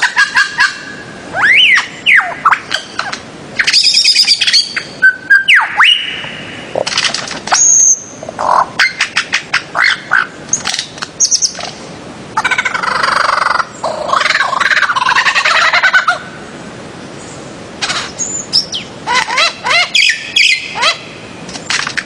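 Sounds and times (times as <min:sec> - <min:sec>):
harsh rasping bird call: 0:12.4 - 0:16.3, 0:17.8 - 0:21.2.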